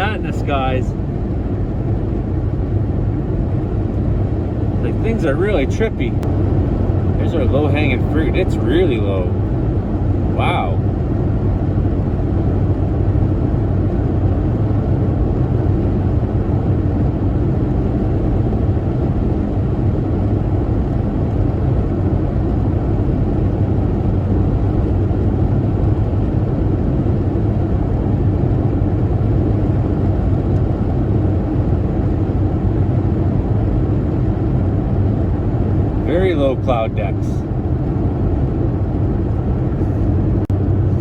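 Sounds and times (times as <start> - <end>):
car road and engine noise: 0.0 - 41.0.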